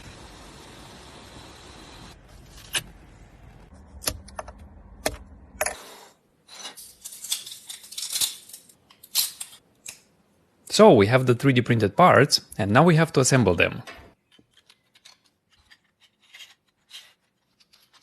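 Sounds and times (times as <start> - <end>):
plastic parts clicking and clattering: 6.6 - 10.0, 14.2 - 18.0.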